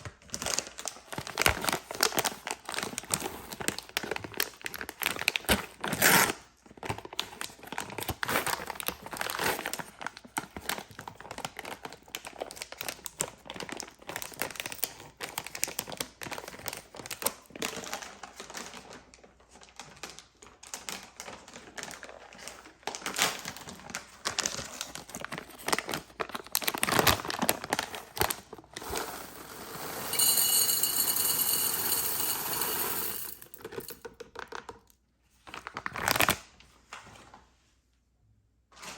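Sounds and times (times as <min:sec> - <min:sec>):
wrappers crinkling and tearing: 0:00.0 - 0:29.6, 0:35.5 - 0:36.5.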